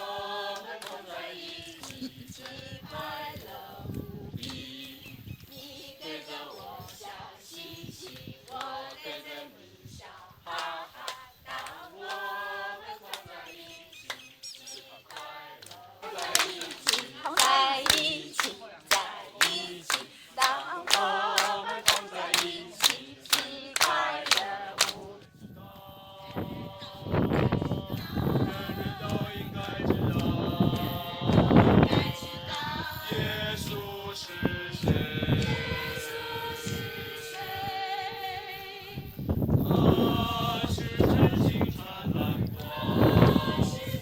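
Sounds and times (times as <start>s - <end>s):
rhythmic hand clapping: 0.0s - 5.6s, 6.3s - 9.3s, 10.5s - 13.4s, 15.0s - 25.3s
group of people singing: 0.0s - 44.0s.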